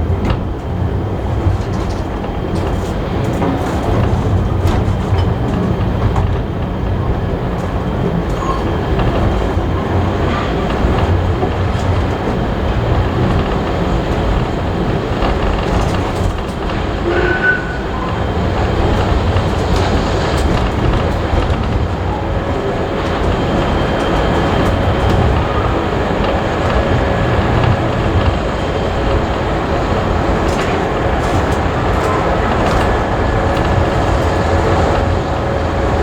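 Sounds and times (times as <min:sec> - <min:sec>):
train wheels rumbling on rails: 0:00.0 - 0:36.0
clicks and rattles: 0:00.1 - 0:35.4.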